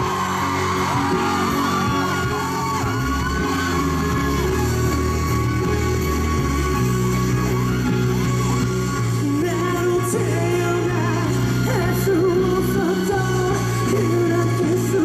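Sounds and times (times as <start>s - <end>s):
live band music: 0.0s - 15.0s
man singing: 9.1s - 15.0s.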